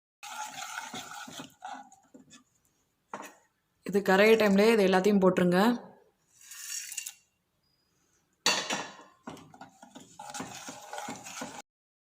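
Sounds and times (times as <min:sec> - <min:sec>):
metal vessels and spoon clinking: 0:06.5 - 0:07.4, 0:08.4 - 0:11.6.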